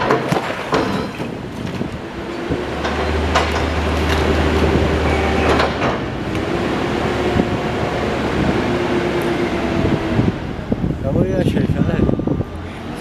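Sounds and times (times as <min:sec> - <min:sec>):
metal clanks and knocks: 0:00.0 - 0:01.5, 0:02.7 - 0:04.0, 0:05.4 - 0:06.2
diesel engine running: 0:00.0 - 0:13.0.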